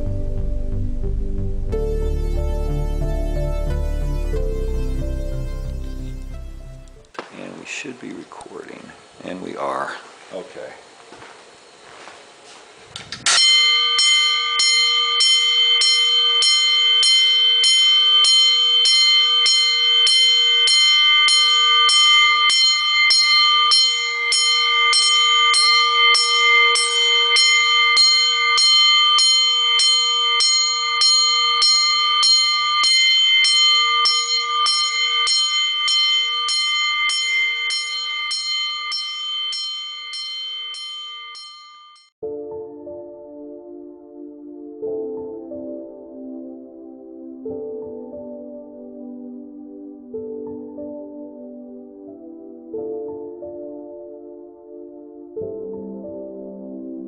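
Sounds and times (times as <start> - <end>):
fire alarm bell ringing: 13.3 - 42.2.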